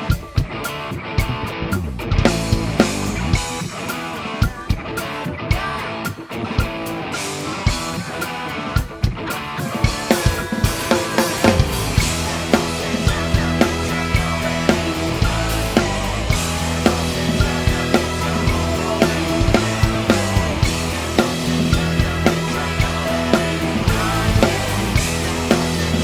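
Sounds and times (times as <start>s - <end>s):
live rock band playing: 0.0s - 26.0s
drum kit hits: 2.0s - 3.7s, 8.8s - 26.0s.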